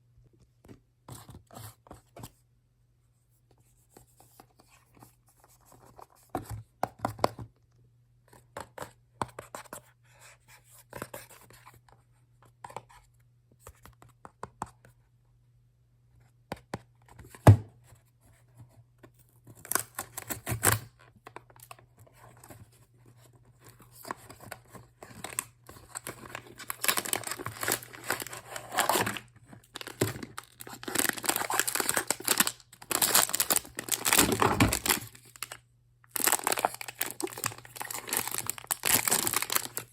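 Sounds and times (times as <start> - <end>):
packaging rustling and tapping: 24.0 - 39.9
wrapping tearing and crinkling: 25.1 - 39.9.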